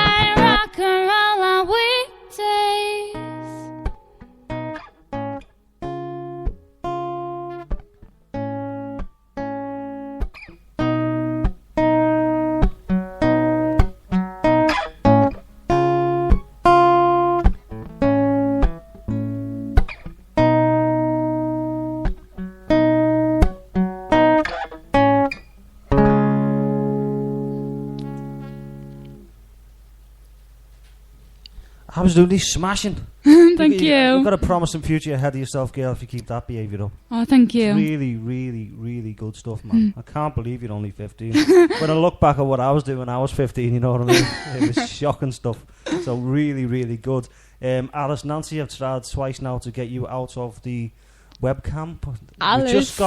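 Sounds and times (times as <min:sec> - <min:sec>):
person singing: 0:00.0 - 0:03.7
acoustic guitar strumming chords: 0:00.0 - 0:29.5.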